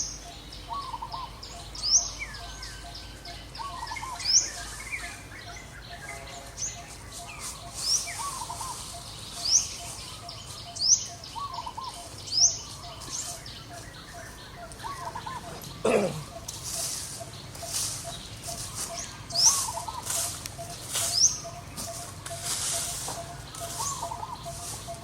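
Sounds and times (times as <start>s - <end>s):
high upward-sweeping bird chirp: 16.4s - 25.0s.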